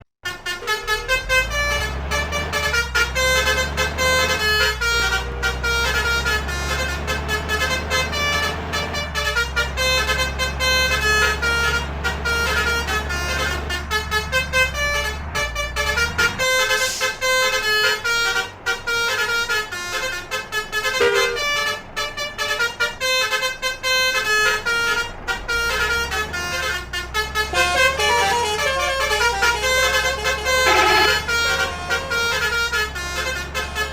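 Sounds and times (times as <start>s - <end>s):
bus air horns playing a tune: 0.2s - 33.9s
low engine drone: 24.4s - 33.9s.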